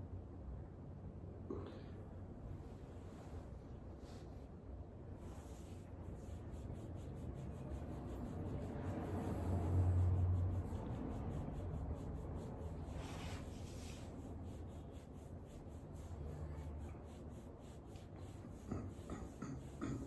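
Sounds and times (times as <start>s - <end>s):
hands rubbing dog fur: 5.2s - 18.6s.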